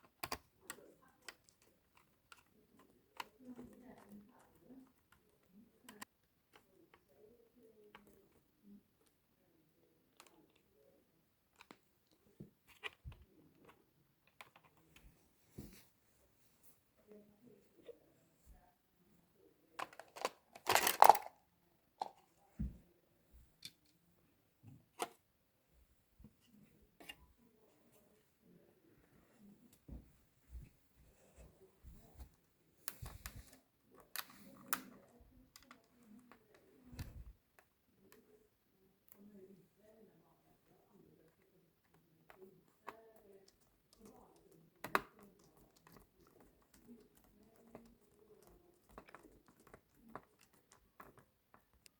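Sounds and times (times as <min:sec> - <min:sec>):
small clicks and light taps: 0:00.0 - 0:08.4, 0:10.1 - 0:10.7, 0:11.5 - 0:15.9, 0:30.6 - 0:38.4, 0:41.2 - 0:51.9
hard parts clicking together: 0:19.8 - 0:21.3.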